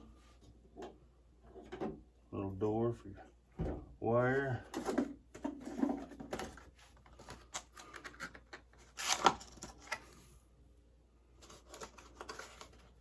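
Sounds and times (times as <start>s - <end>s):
hands handling parts and packaging: 4.4s - 10.4s, 11.4s - 13.0s.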